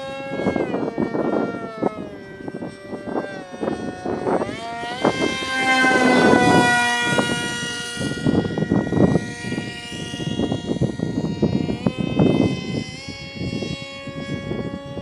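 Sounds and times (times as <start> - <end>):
model plane motor whining: 0.0 - 15.0
wind buffeting microphone: 0.0 - 15.0.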